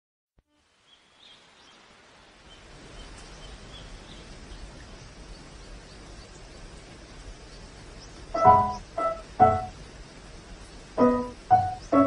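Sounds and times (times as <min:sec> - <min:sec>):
small birds chirping: 0:00.8 - 0:12.0
steady rushing noise: 0:02.6 - 0:12.0.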